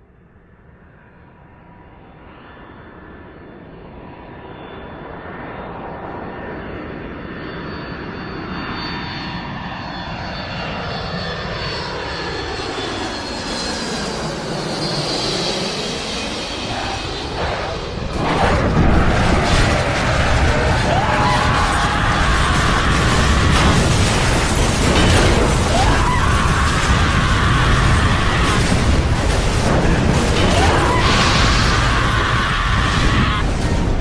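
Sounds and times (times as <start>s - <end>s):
aeroplane engine approaching: 0.0s - 34.0s.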